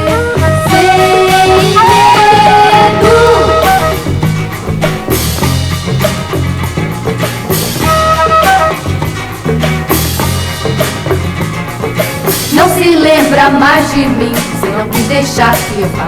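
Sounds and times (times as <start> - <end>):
person singing: 0.0 - 4.1, 12.5 - 16.0
rock song from vinyl record: 0.0 - 16.0.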